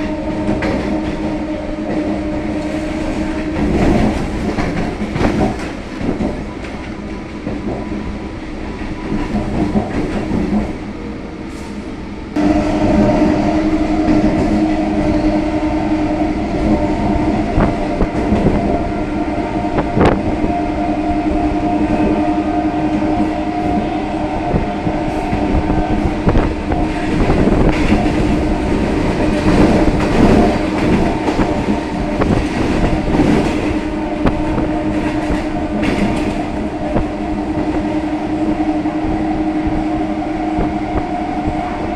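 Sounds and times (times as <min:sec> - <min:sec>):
train wheels clattering over rails: 0:00.0 - 0:10.8, 0:23.0 - 0:38.8
steady humming tone: 0:12.4 - 0:41.9.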